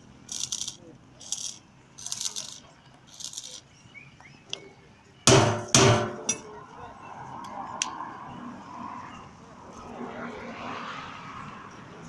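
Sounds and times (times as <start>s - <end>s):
hammer blows on metal: 5.3s - 6.5s.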